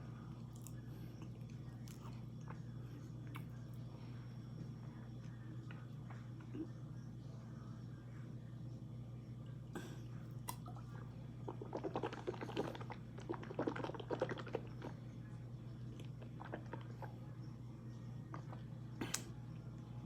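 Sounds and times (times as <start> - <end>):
low hum: 0.0 - 20.0
person chewing crunchy food: 11.4 - 15.0.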